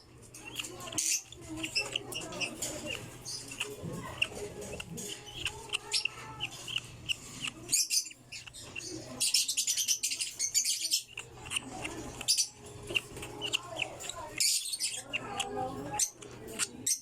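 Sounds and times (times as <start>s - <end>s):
lovebirds chirping: 0.0s - 17.0s
rapid scratchy clicks: 0.2s - 15.3s.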